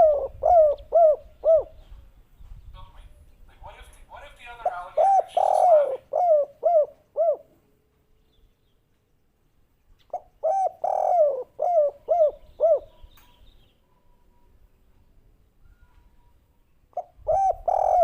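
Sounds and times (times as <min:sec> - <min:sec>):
dove cooing: 0:00.0 - 0:02.0, 0:04.6 - 0:07.6, 0:10.1 - 0:13.1, 0:16.9 - 0:18.0.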